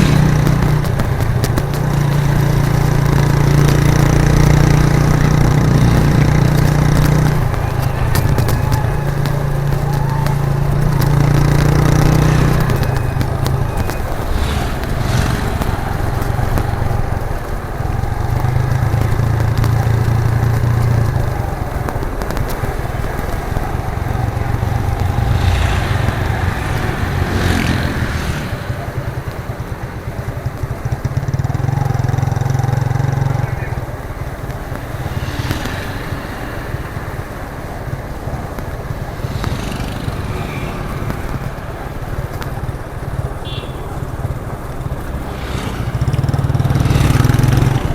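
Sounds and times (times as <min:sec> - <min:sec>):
motorcycle engine running: 0:00.0 - 0:47.9.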